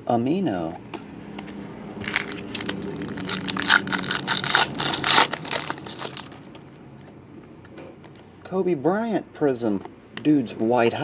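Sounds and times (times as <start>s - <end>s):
card pack crinkling and rustling: 2.0s - 6.6s.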